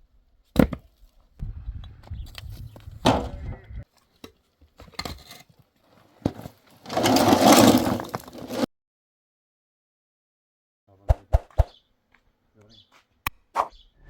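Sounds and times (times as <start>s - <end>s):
sharp knocks and thuds: 3.0s - 3.5s
scraping crunching rush: 6.5s - 8.7s.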